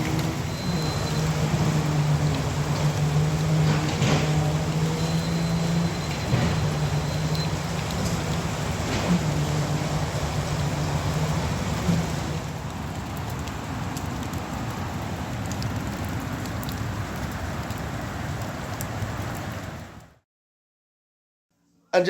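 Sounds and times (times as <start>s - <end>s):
construction machine engine humming: 0.0s - 13.0s
water drips ticking: 0.0s - 19.7s
rain hiss: 0.0s - 20.1s.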